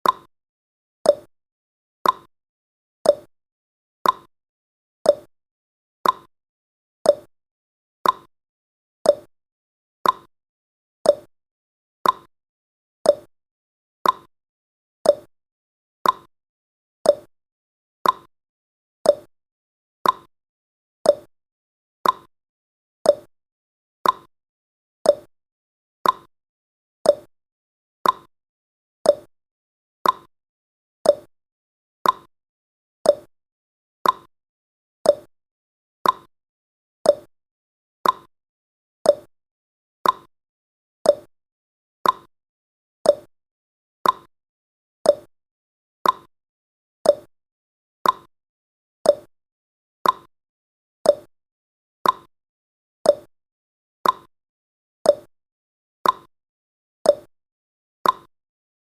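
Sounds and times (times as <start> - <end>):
clock ticking: 38.0 - 38.3, 42.0 - 42.3, 44.0 - 44.3.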